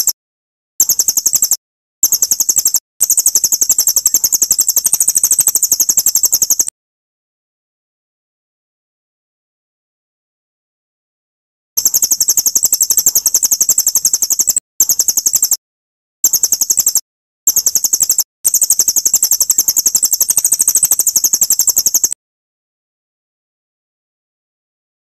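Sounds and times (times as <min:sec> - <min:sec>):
bird singing high-pitched trill: 0:00.8 - 0:06.7, 0:11.8 - 0:15.6, 0:16.2 - 0:22.2.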